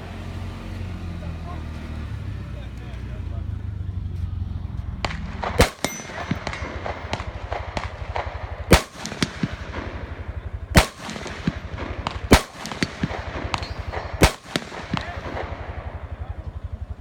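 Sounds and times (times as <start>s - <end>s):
low steady hum: 2.1s - 17.0s
faint sharp cracks: 4.8s - 16.9s
loud rifle shots: 5.0s - 17.0s.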